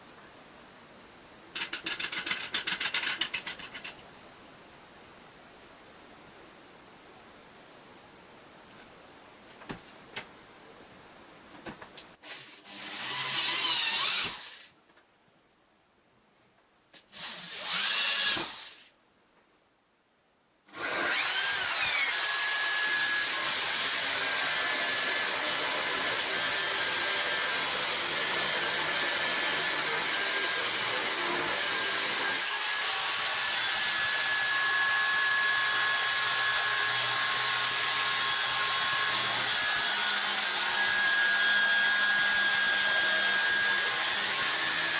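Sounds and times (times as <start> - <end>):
electric drill motor whine: 20.7 - 44.9.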